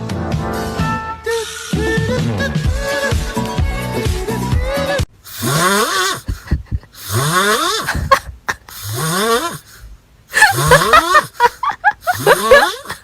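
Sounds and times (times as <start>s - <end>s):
cat snoring: 5.3s - 6.3s, 7.0s - 7.9s, 8.8s - 9.6s.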